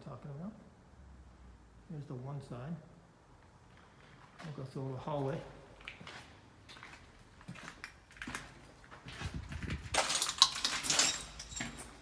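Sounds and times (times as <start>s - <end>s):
crunching and clicking underfoot: 3.7s - 12.0s
footsteps in hallway: 3.7s - 12.0s.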